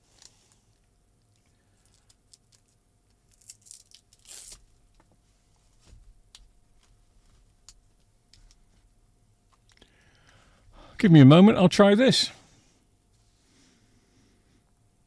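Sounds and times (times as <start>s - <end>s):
crinkly packaging rustle: 0.0s - 8.8s
faint steady hum: 0.0s - 15.0s.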